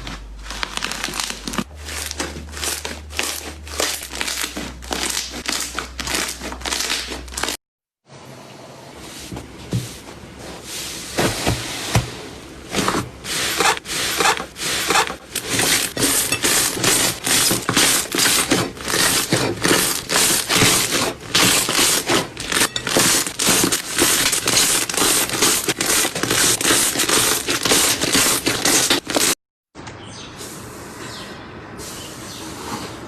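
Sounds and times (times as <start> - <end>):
slime squishing and crackling: 0.0 - 7.6.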